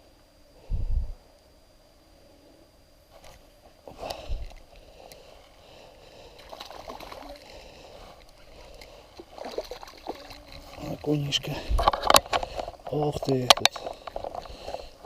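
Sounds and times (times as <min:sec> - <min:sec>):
water splashing at boat side: 0:06.4 - 0:07.6, 0:09.2 - 0:11.2.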